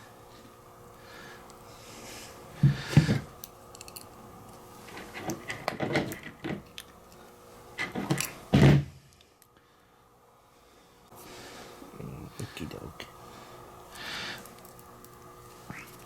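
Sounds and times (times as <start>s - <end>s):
wire connectors clicking and rattling: 3.4s - 8.4s.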